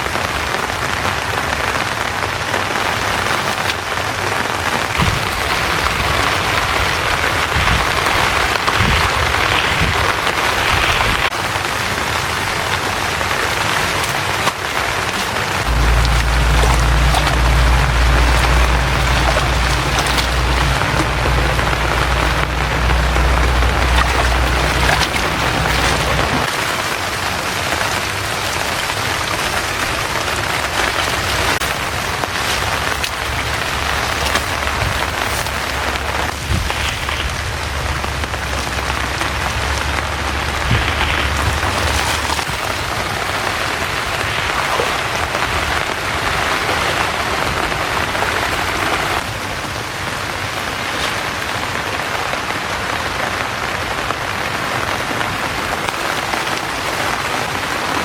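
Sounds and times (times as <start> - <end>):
steady rain falling: 0.0 - 58.0
low rumble: 15.6 - 26.5.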